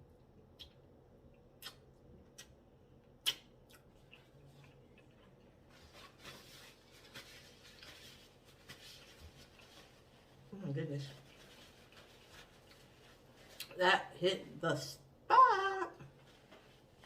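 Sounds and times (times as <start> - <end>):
mouth clicks and smacks: 0.5 - 5.2
soft scratchy rustling: 4.4 - 13.7, 16.2 - 17.0.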